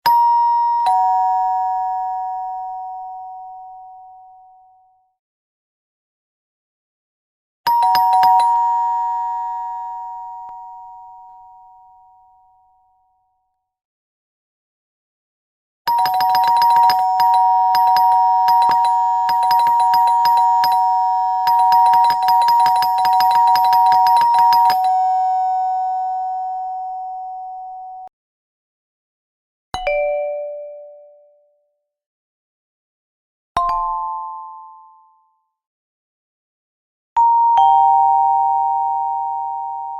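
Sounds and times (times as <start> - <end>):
ding-dong doorbell chime: 0.1 - 5.1, 7.7 - 13.0, 15.9 - 28.1, 37.2 - 39.9.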